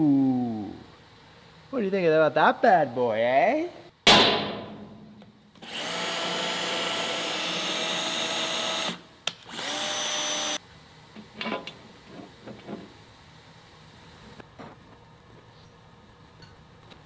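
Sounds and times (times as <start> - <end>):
electric power tool running: 5.6 - 10.6.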